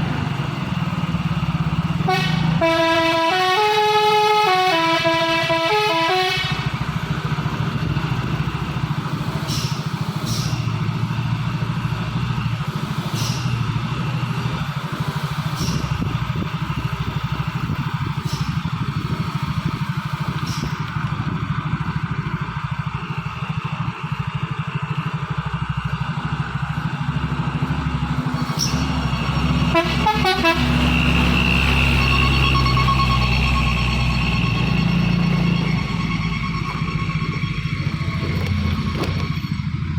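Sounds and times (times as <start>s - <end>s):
diesel engine running: 0.0s - 39.9s
multi-tone truck horn tune: 1.6s - 7.2s, 28.4s - 39.5s.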